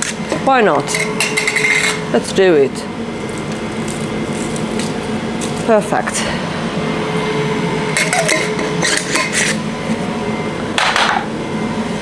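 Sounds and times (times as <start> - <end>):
kitchen appliance humming: 0.0 - 12.0
kitchenware handling noise: 8.0 - 9.6, 10.8 - 11.3.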